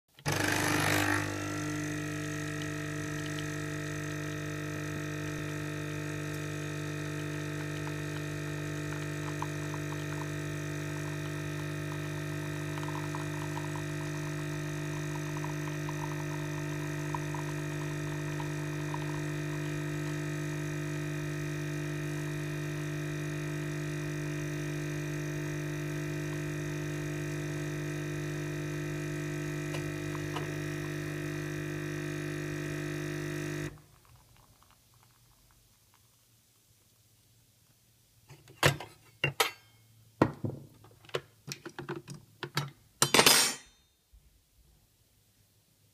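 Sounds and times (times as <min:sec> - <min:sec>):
coffee machine pump humming: 0:00.1 - 0:36.2.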